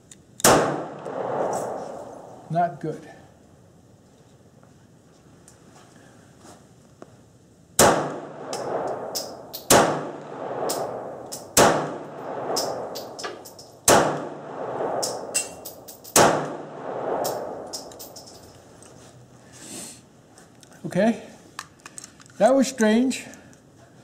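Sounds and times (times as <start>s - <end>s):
pistol shots echoing: 0.4s - 1.5s, 7.8s - 13.2s, 13.8s - 18.0s
small metallic clicks: 17.3s - 18.9s, 21.6s - 22.4s.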